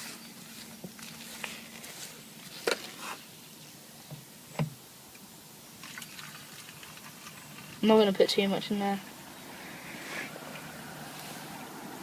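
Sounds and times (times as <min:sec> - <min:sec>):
petrol trickling into tank: 0:05.8 - 0:08.2.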